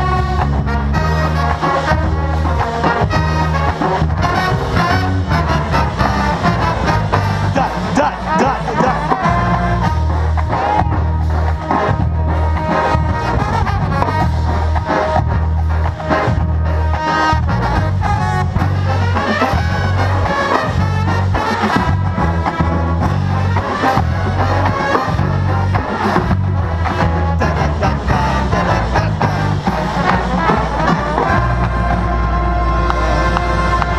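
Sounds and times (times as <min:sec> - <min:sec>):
marching band playing: 0:00.0 - 0:33.9.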